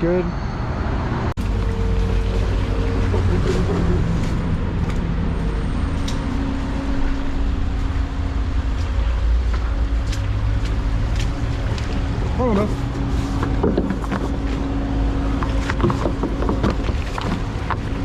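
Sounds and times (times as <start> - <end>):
diesel engine running: 1.4 - 18.0.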